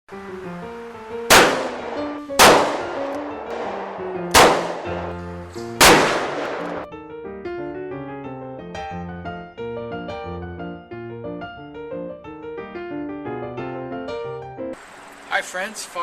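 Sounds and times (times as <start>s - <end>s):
ragtime piano music: 0.1s - 14.8s
gunshots with ringing echo: 1.3s - 6.9s.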